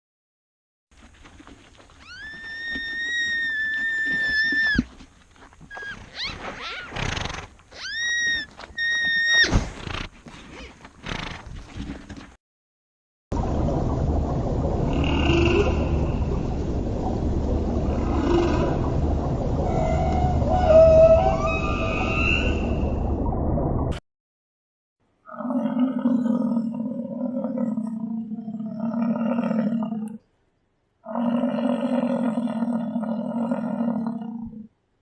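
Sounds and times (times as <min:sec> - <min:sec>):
animal high calls: 0:05.7 - 0:09.5.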